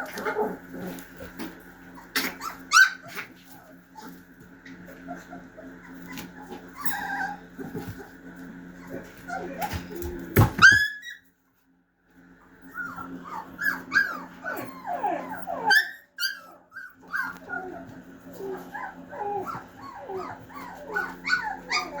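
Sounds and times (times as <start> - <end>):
puppy whining and yipping: 1.9 - 4.2, 4.9 - 8.0, 10.6 - 11.3, 12.6 - 22.0.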